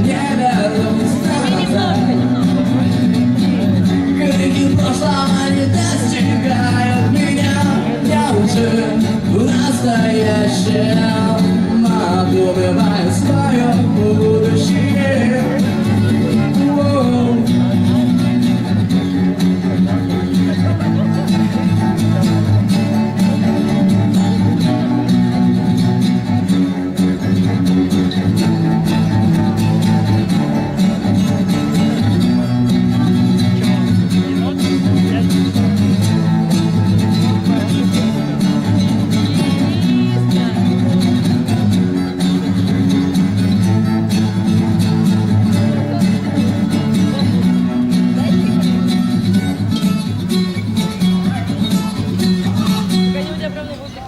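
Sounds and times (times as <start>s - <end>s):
rock band playing guitars: 0.0s - 54.0s.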